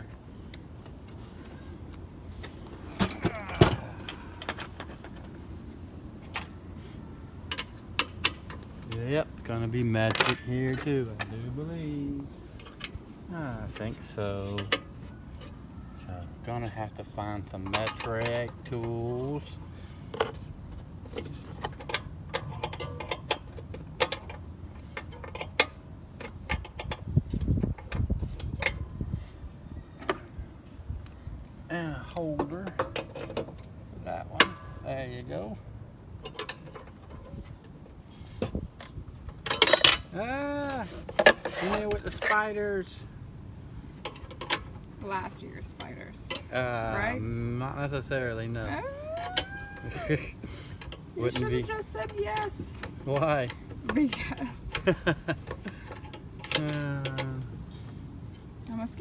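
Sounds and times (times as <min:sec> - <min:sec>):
metal tools clinking and clanking: 0:06.3 - 0:06.6, 0:10.0 - 0:11.6, 0:39.4 - 0:40.2.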